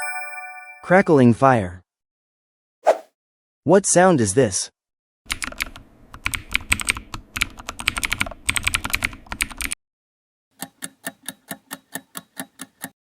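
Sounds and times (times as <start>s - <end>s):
keyboard typing: 5.3s - 9.7s.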